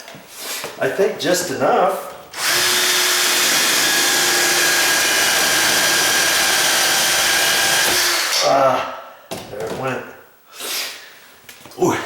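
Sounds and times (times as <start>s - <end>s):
rotary tool grinding metal: 2.4s - 8.5s.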